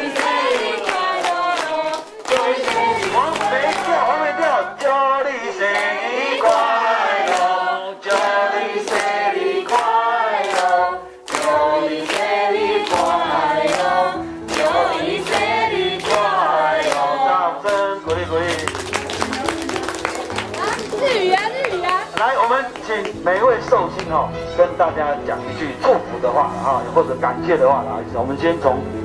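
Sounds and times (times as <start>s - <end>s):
group singing: 0.0s - 18.2s
people clapping: 0.0s - 24.2s.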